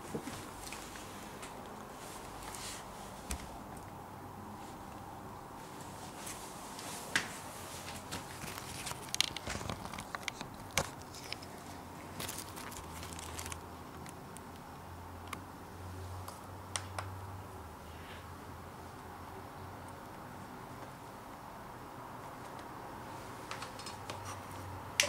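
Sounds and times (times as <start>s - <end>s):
laptop being handled: 6.2s - 14.1s.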